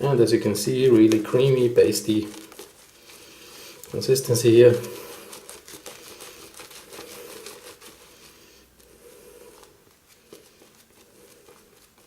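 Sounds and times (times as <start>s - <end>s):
brush whisking lather in a mug: 0.5s - 12.0s.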